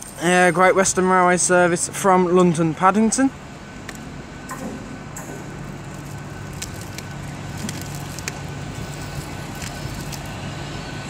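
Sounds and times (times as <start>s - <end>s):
train pulling into platform: 8.5s - 11.0s.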